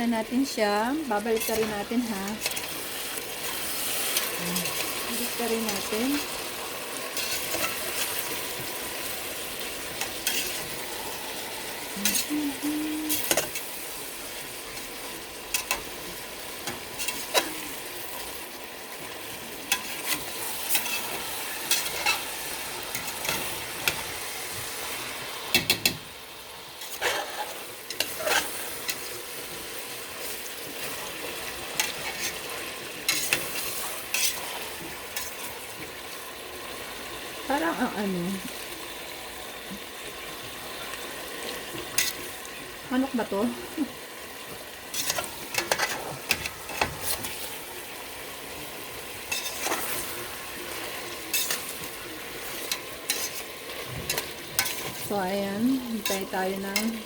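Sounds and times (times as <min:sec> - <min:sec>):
chicken sizzling in a frying pan: 0:00.0 - 0:57.0
utensil scraping a pan: 0:07.1 - 0:08.8, 0:10.0 - 0:10.8, 0:16.6 - 0:17.7, 0:19.6 - 0:24.1, 0:26.8 - 0:29.1, 0:31.7 - 0:35.5, 0:44.9 - 0:47.6, 0:49.3 - 0:55.2.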